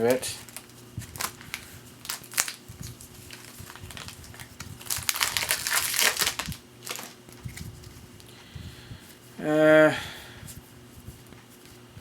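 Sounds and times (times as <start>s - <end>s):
plastic wrapper crinkling: 0.0s - 8.0s.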